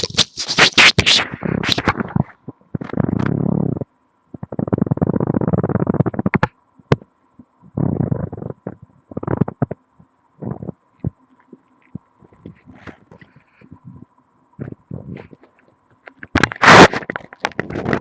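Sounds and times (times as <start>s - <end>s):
rubbing and scraping against skin: 0.0s - 6.5s, 10.5s - 13.8s, 14.6s - 18.0s.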